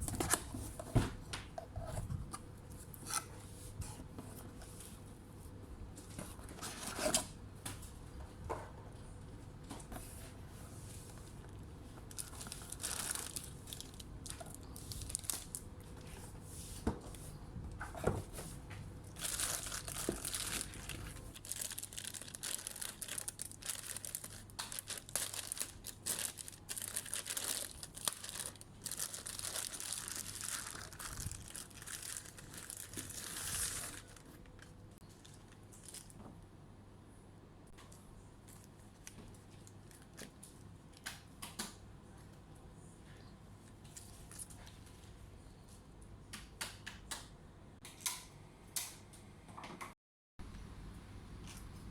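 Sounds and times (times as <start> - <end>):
plastic packaging crinkling: 11.2 - 16.0, 19.0 - 36.2.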